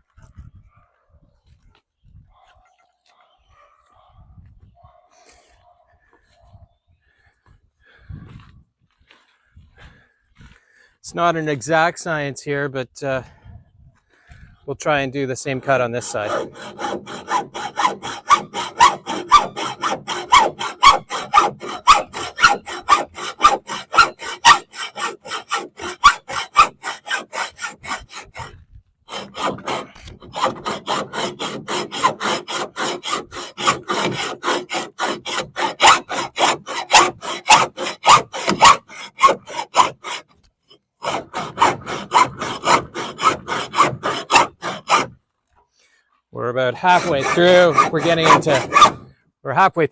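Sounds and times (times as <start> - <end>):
saw cutting through metal: 15.4 - 40.3, 41.0 - 45.2, 46.8 - 49.1.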